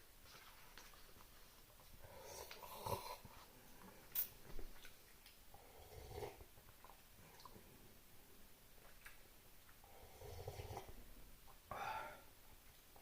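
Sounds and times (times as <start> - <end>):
breathing: 11.7 - 12.3.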